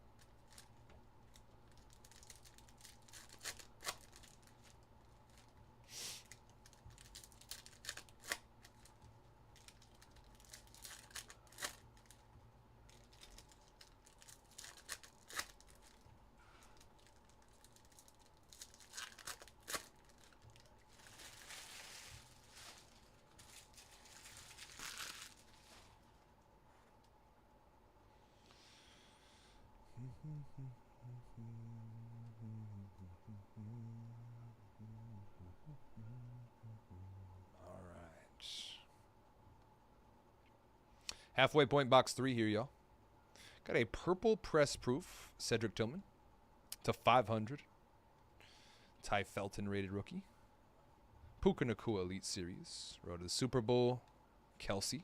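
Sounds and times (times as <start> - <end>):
card wrappers tearing and crinkling: 1.3 - 5.5, 6.2 - 8.9, 9.6 - 12.2, 12.9 - 16.0, 16.7 - 26.0.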